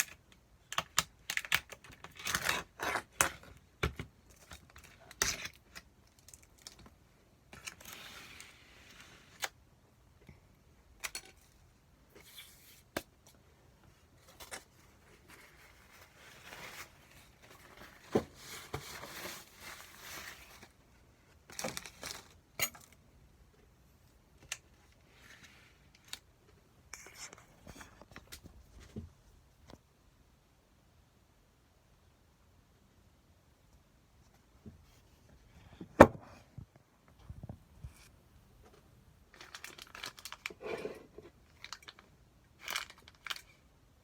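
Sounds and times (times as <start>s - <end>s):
plastic packaging rustling: 14.2s - 20.8s, 21.4s - 22.5s, 39.3s - 43.6s.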